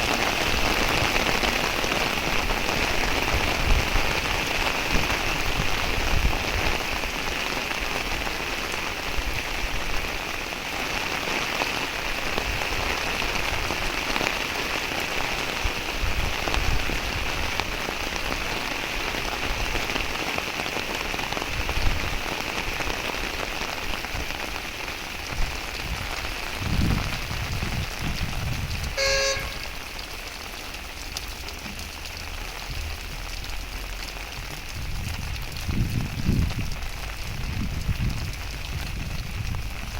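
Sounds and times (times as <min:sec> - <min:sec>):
heavy rain: 0:00.0 - 0:39.9
short toot: 0:29.0 - 0:29.8.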